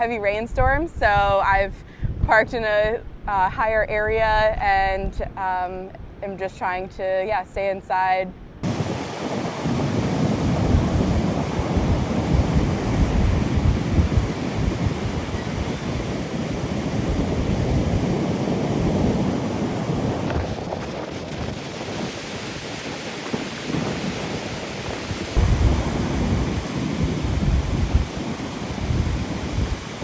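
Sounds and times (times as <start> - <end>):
wind buffeting microphone: 0.0 - 7.2, 8.4 - 30.0
heavy surf: 8.6 - 30.0.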